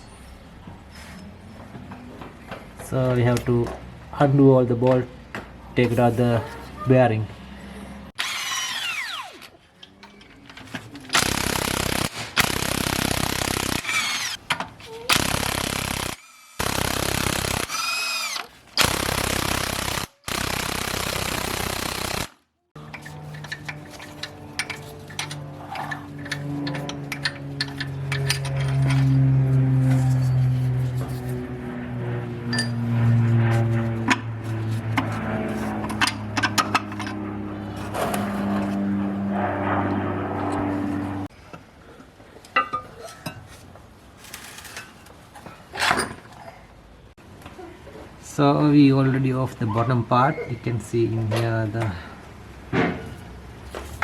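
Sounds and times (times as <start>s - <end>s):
metal tools clinking and scraping: 9.4s - 11.1s, 22.8s - 31.4s, 32.5s - 32.8s, 42.4s - 46.7s
low hum: 15.3s - 41.3s.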